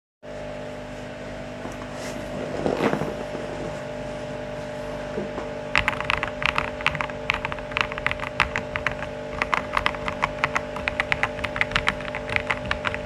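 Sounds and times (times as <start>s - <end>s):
steady humming drone: 0.2s - 13.0s
mechanical keyboard clicking: 5.7s - 13.0s.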